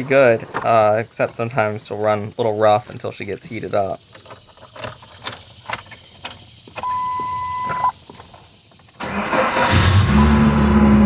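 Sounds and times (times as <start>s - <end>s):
car engine cranking and starting: 0.0s - 11.0s
ignition key clicks: 3.6s - 8.4s
dashboard warning beep: 6.8s - 8.0s.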